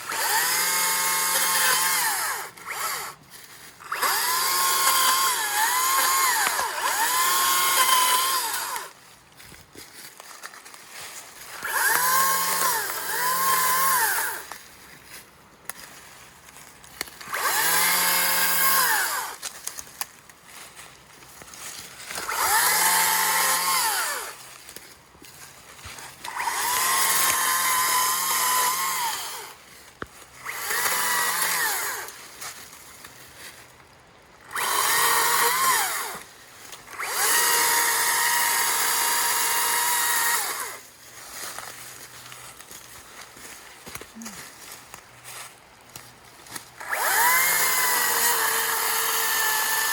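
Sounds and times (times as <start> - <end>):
chainsaw cutting wood: 0.0 - 9.0, 11.5 - 14.6, 17.0 - 19.9, 21.8 - 24.8, 25.8 - 32.7, 34.4 - 41.8, 45.4 - 49.9.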